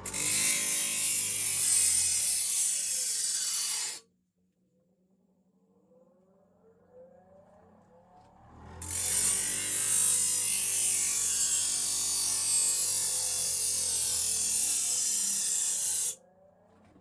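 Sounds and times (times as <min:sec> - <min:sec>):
grinder grinding metal blade: 0:00.0 - 0:04.0, 0:08.8 - 0:16.2.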